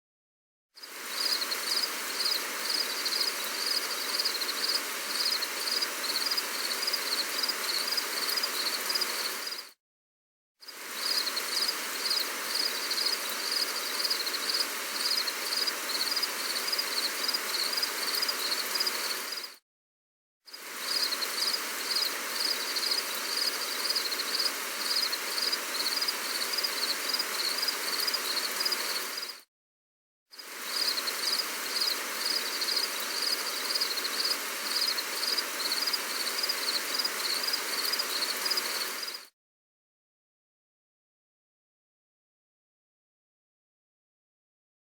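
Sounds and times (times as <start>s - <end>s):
insect chirping: 0.8s - 9.7s, 10.7s - 19.6s, 20.5s - 29.4s, 30.4s - 39.3s
gentle rain hiss: 0.8s - 9.8s, 10.6s - 19.6s, 20.5s - 29.4s, 30.4s - 39.3s.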